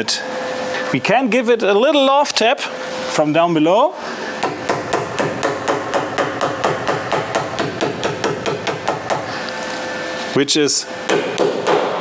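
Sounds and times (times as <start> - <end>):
hammer tapping on sheet metal: 4.4 - 9.4, 11.1 - 12.0.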